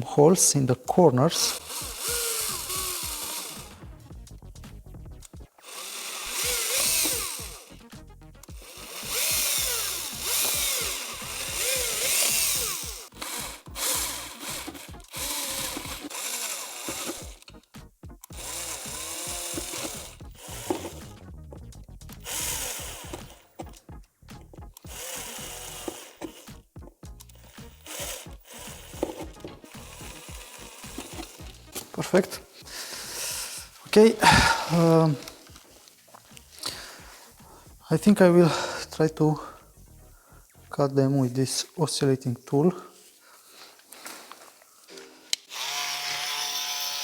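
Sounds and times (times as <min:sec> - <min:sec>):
power drill boring through plastic: 0:00.4 - 0:03.9, 0:05.6 - 0:07.8, 0:08.4 - 0:17.6, 0:18.2 - 0:21.1, 0:22.2 - 0:23.8, 0:24.8 - 0:26.6, 0:27.4 - 0:35.6, 0:45.4 - 0:47.0.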